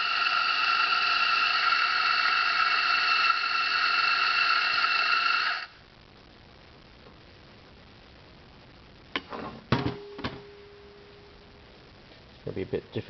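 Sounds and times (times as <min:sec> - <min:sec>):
electric coffee grinder whining: 0:00.0 - 0:05.7.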